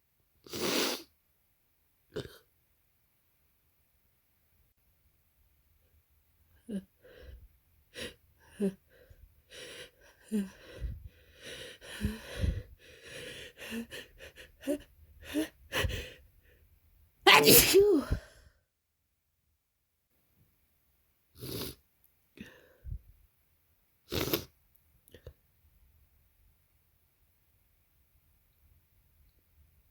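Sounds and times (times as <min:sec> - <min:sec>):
person sneezing: 0:17.3 - 0:18.3.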